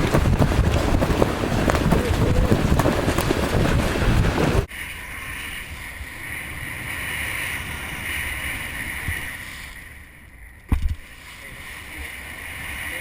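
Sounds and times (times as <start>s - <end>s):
wind buffeting microphone: 0.0s - 4.7s
wind and sea hiss: 0.0s - 13.0s.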